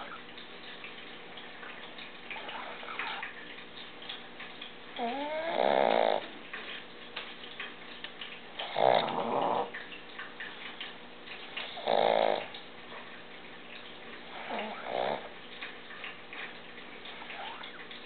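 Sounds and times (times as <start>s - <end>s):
dog snoring: 5.0s - 6.4s, 8.6s - 9.7s, 11.6s - 12.5s, 14.3s - 15.3s.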